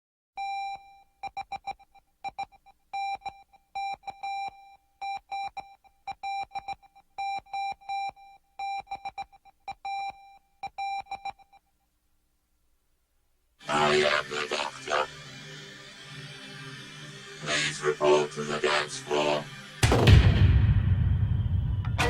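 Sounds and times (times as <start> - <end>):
electronic beeps: 13.7 - 15.4.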